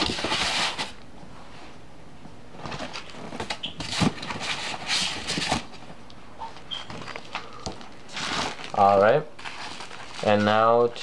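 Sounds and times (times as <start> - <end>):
packaging rustling: 6.8 - 10.8.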